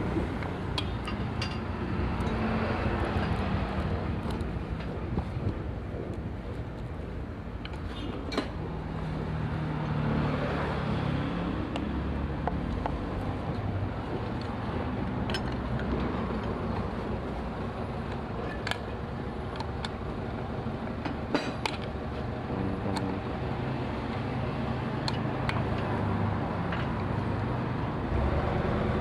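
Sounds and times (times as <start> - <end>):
road traffic rumble: 0.0 - 29.0
vehicle passing by: 8.8 - 15.2, 22.5 - 29.0.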